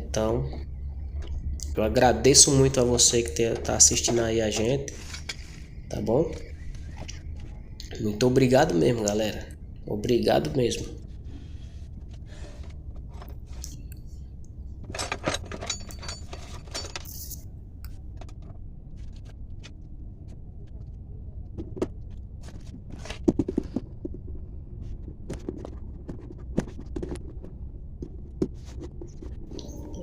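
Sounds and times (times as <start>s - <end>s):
steady low hum: 0.0s - 30.0s
metal tools clinking and scraping: 2.3s - 7.4s, 14.8s - 17.4s.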